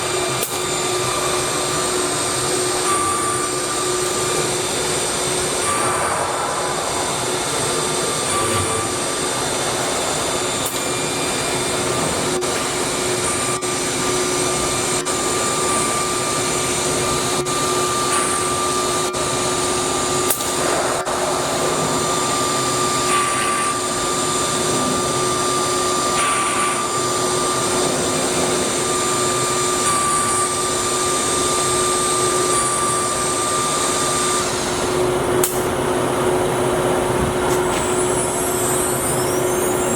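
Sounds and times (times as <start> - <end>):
continuous rushing noise: 0.0 - 31.4
router spindle whine: 0.0 - 39.9.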